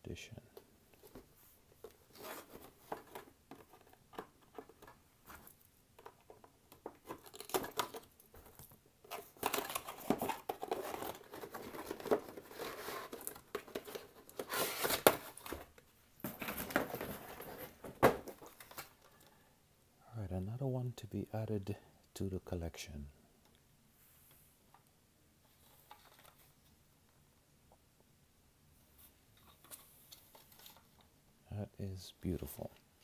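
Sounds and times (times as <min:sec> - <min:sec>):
packaging crinkling and tearing: 0:07.1 - 0:08.1, 0:09.1 - 0:15.6.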